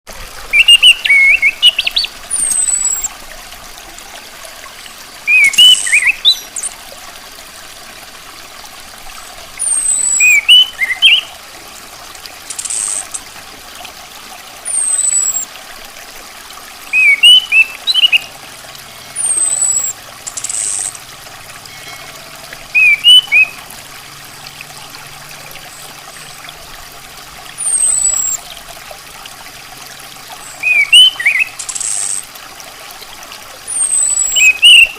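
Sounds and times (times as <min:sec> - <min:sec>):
bird chirping: 0:00.5 - 0:03.1, 0:05.3 - 0:06.6, 0:09.6 - 0:11.3, 0:16.9 - 0:18.3, 0:19.1 - 0:21.0, 0:21.7 - 0:23.6, 0:27.6 - 0:28.5, 0:30.6 - 0:32.2, 0:33.7 - 0:34.9
thin high down-slurred bird notes: 0:21.6 - 0:23.6.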